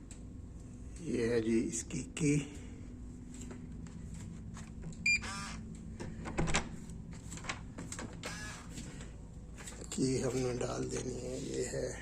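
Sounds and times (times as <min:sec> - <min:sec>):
steady low hum: 0:00.0 - 0:12.0
door lock beep: 0:05.0 - 0:05.4
door lock buzz: 0:05.1 - 0:05.6, 0:08.2 - 0:08.7.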